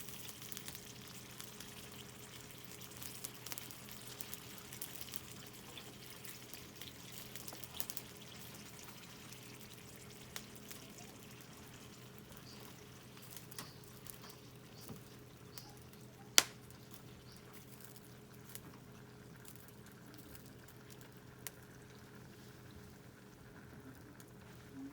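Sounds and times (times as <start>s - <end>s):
campfire crackling: 0.0s - 24.9s
sharp pop of fire: 16.4s - 16.6s.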